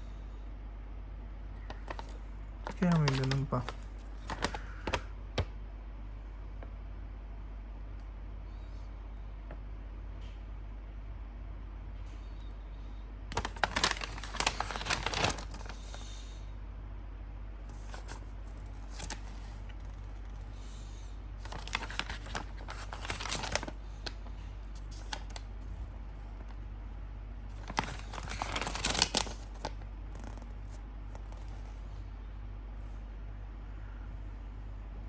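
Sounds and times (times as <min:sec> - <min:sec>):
steady low hum: 0:00.0 - 0:35.0
packaging rustling and crinkling: 0:01.6 - 0:05.5, 0:13.3 - 0:16.0, 0:17.7 - 0:20.3, 0:21.4 - 0:25.8, 0:27.5 - 0:31.6.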